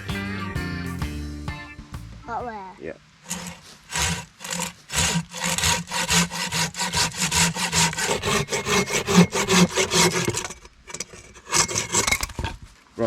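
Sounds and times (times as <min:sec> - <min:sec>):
hand tool rasping strokes: 0:03.3 - 0:12.7.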